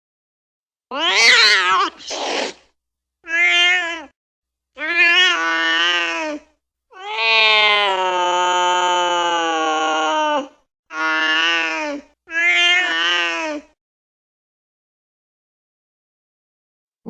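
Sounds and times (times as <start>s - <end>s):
angry cat yowling: 0.9s - 2.6s, 3.3s - 4.2s, 4.8s - 13.7s
brief raspy noise: 1.8s - 2.7s.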